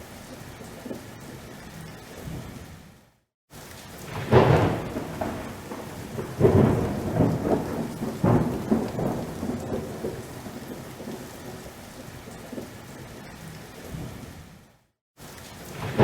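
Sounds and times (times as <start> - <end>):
steady rain: 0.0 - 16.0
thunder cracking and rumbling: 4.0 - 12.8, 15.7 - 16.0.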